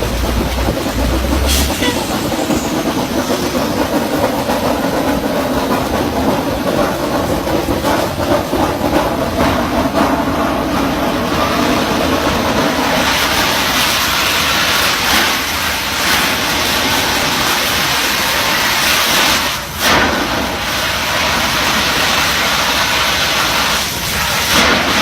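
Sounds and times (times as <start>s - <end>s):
low hum: 0.0s - 6.4s
drilling rig machinery running: 0.0s - 25.0s.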